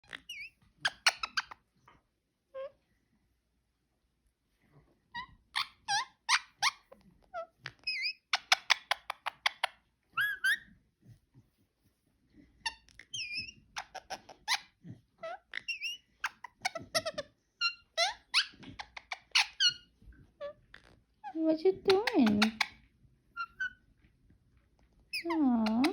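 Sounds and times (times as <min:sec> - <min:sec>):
parakeet chirping: 0:00.1 - 0:01.6, 0:05.1 - 0:10.7, 0:12.6 - 0:21.0, 0:21.8 - 0:22.8, 0:23.4 - 0:23.9, 0:25.1 - 0:25.9.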